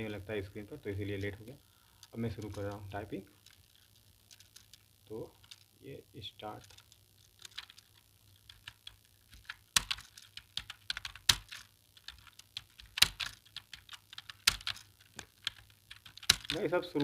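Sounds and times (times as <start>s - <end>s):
keyboard typing clicks: 8.5s - 16.6s.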